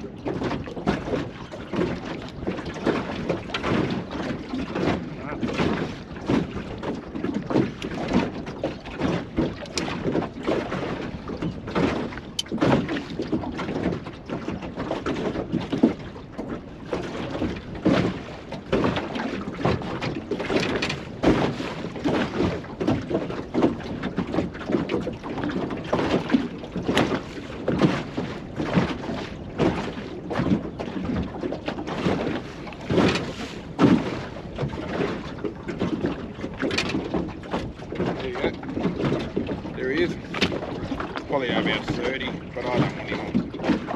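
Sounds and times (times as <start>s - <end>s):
water slapping against boat hull: 0.0s - 43.9s
wind buffeting microphone: 17.3s - 43.9s.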